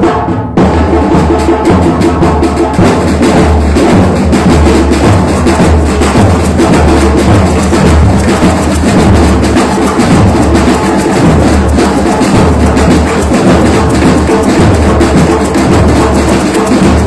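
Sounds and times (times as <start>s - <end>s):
snare drums and percussion: 0.0s - 17.0s.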